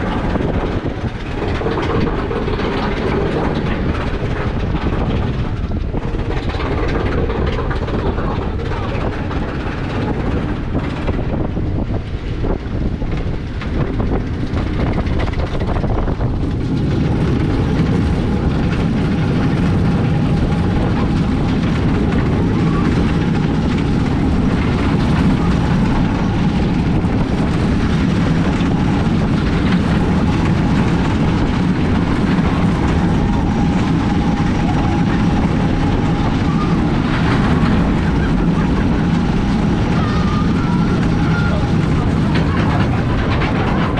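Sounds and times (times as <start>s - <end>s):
roller coaster clicks: 0.0s - 43.9s
roller coaster wheels rumbling: 0.0s - 43.9s.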